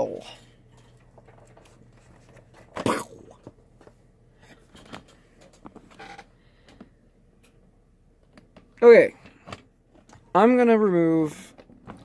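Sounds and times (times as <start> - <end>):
small clicks and light scrapes: 0.7 - 2.7.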